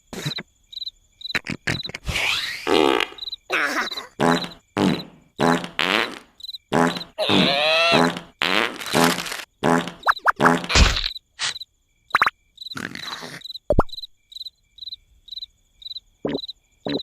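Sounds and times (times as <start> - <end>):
comic vocal blurts: 7.2 - 8.2.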